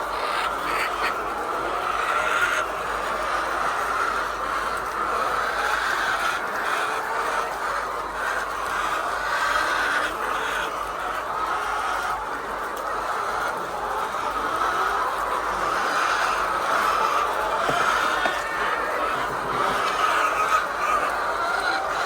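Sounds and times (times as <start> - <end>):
hens clucking: 0.0 - 22.0.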